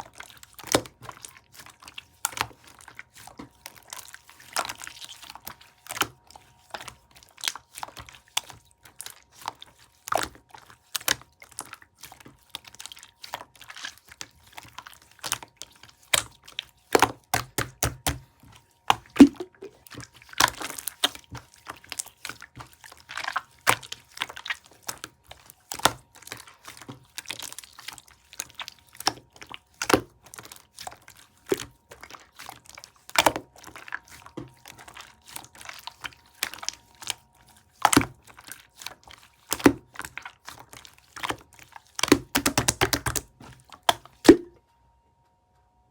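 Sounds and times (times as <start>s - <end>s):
sticky slime clicks and pops: 42.0s - 43.3s.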